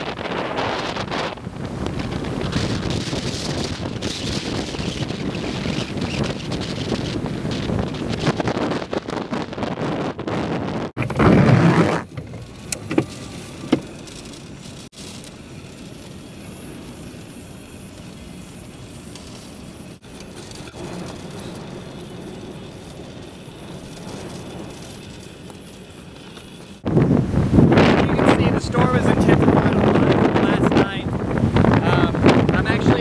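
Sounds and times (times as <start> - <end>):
wind buffeting microphone: 0.0 - 33.0
surf rushing: 19.6 - 33.0.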